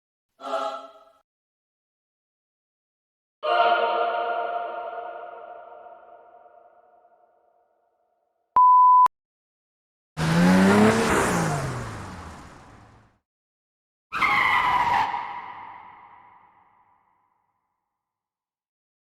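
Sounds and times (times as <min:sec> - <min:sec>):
censor bleep: 0:08.6 - 0:09.1
car engine noise falling in pitch: 0:10.2 - 0:13.2.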